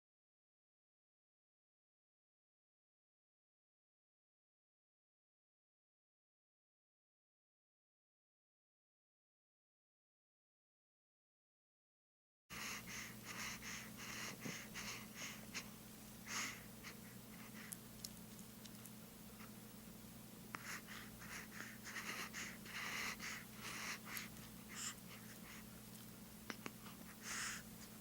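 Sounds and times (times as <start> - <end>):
rapid panting breaths: 12.5 - 17.8, 20.6 - 25.9, 26.7 - 28.0
steady low hum: 12.5 - 28.0.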